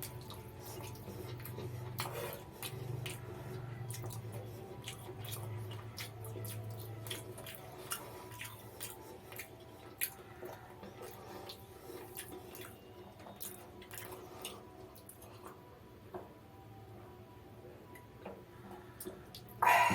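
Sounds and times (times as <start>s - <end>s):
wet chewing and mouth smacks: 0.0s - 15.6s.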